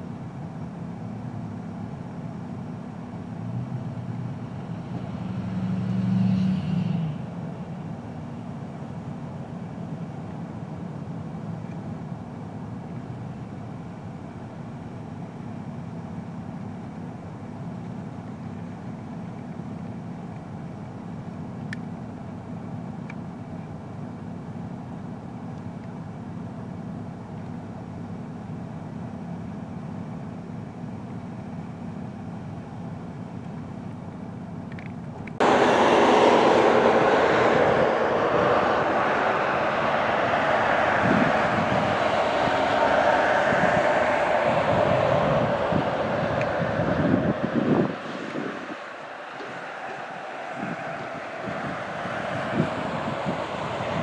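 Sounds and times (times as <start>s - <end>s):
steady low rumble: 35.2s - 54.0s
loud broad rushing noise: 35.4s - 54.0s.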